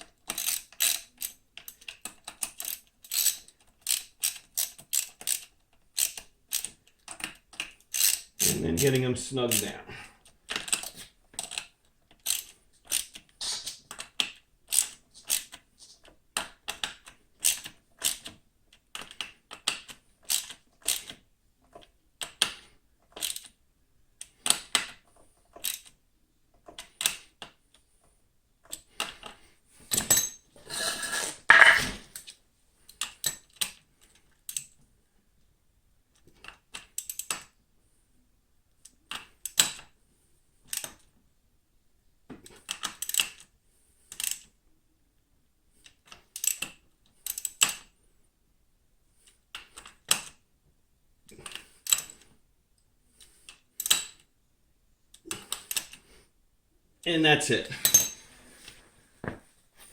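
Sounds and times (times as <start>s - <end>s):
clattering scrape: 30.0s - 32.2s.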